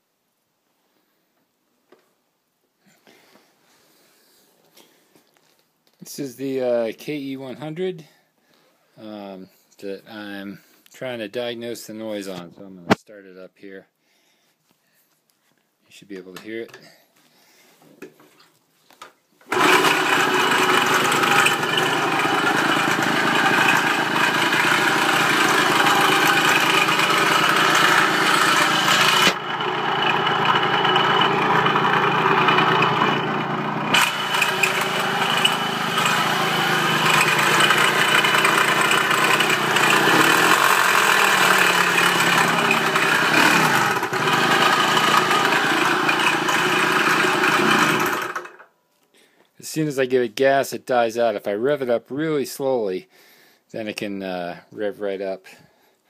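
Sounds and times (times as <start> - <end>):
motorcycle engine idling: 20.8 - 40.9.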